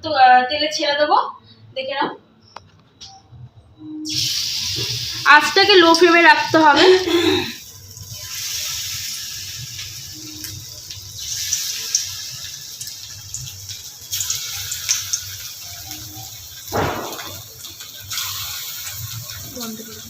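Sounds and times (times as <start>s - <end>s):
food sizzling in hot oil: 4.1s - 20.0s.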